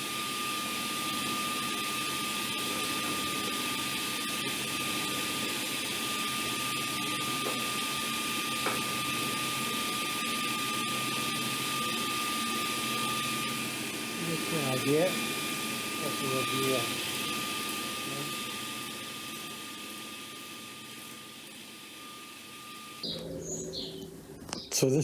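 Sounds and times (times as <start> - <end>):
power tool whining: 0.0 - 24.7.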